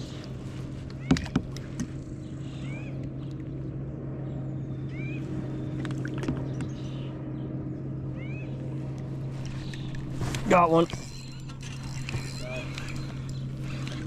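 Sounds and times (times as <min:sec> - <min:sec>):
small motor humming: 0:00.0 - 0:14.0
bird calling: 0:00.9 - 0:03.1, 0:04.8 - 0:07.1, 0:08.1 - 0:08.6, 0:10.9 - 0:14.0.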